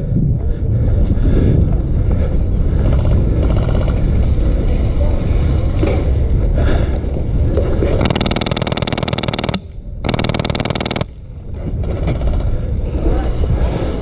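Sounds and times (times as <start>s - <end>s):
low rumbling noise: 0.0s - 14.0s
airsoft machine gun firing: 8.0s - 11.2s.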